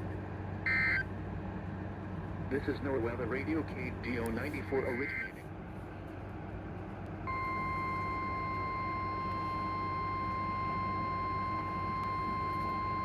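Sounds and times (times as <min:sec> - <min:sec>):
steady high alarm tone: 0:00.7 - 0:01.0, 0:07.3 - 0:13.0.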